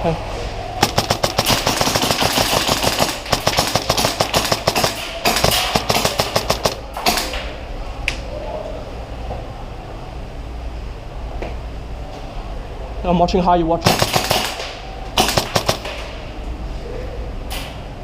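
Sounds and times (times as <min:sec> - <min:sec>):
airsoft rifle firing full auto: 0:00.8 - 0:07.3, 0:13.9 - 0:16.1.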